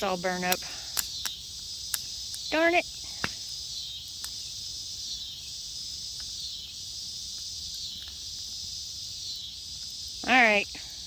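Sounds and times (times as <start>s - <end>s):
crickets chirring: 0.0s - 11.0s
faint clicks: 0.5s - 2.5s.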